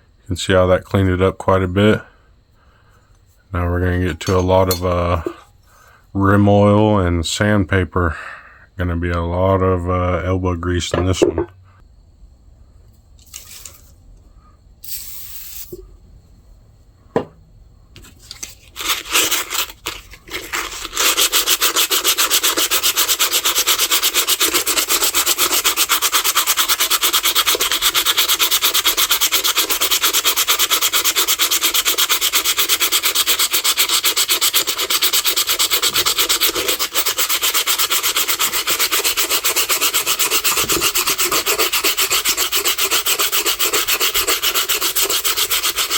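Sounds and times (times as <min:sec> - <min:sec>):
sandpaper sanding steel: 0:18.8 - 0:45.9.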